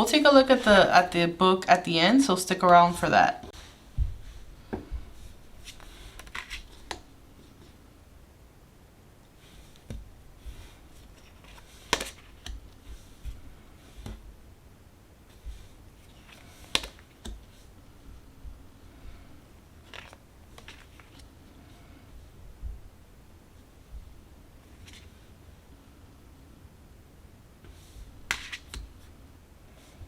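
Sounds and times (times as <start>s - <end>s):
cards tapping and sliding: 5.6s - 7.7s, 9.6s - 14.2s, 15.4s - 17.6s, 27.7s - 29.0s.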